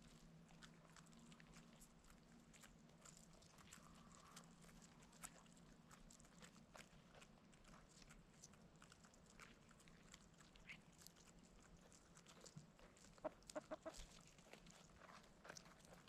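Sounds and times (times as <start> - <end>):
chickens clucking: 13.2 - 14.1.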